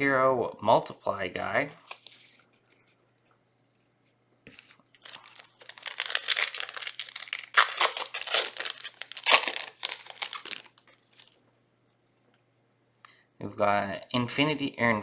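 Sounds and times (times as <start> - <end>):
foil wrapper tearing and crinkling: 4.5 - 11.4.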